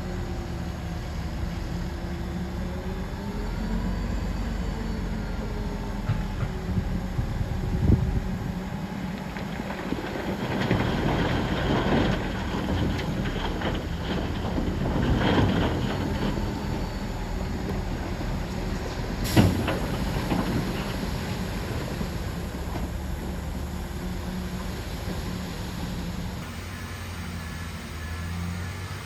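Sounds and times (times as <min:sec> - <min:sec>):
bulldozer diesel engine: 0:00.0 - 0:29.0
tracks clanking and rattling: 0:06.0 - 0:07.0, 0:08.8 - 0:23.6.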